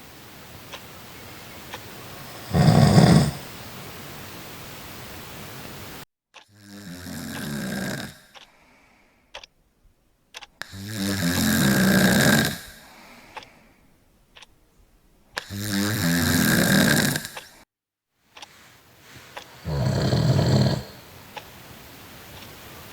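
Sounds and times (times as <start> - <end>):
loud rattling snoring: 2.0 - 3.6, 6.6 - 8.3, 10.7 - 12.8, 15.4 - 17.6, 19.6 - 21.2
clock ticking faintly: 9.3 - 10.8, 13.2 - 15.5, 19.2 - 22.9.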